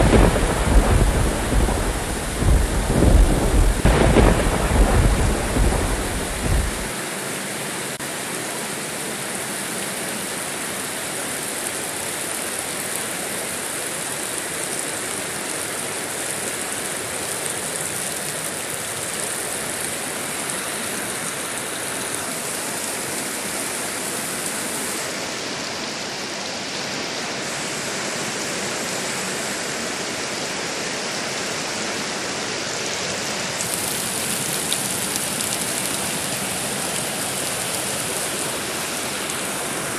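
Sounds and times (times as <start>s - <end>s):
thunder rumble: 0.0s - 6.9s
heavy rain: 0.0s - 39.9s.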